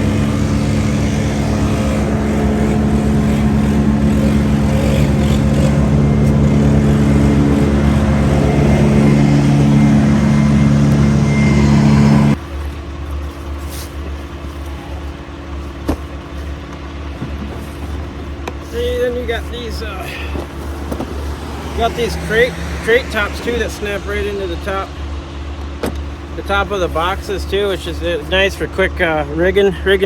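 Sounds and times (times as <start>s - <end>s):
low hum: 0.0s - 18.7s
heavy engine running: 0.0s - 30.0s.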